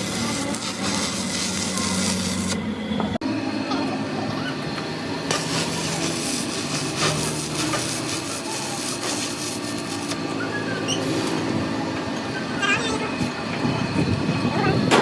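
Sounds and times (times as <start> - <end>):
low workshop hum: 0.0 - 15.0
metal being filed by hand: 5.3 - 10.2.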